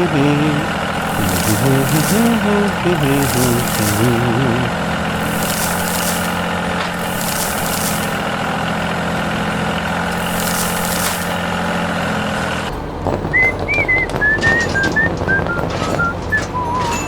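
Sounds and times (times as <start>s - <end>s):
hiss: 0.0s - 8.5s, 9.9s - 11.8s
heavy engine hum: 0.0s - 17.0s.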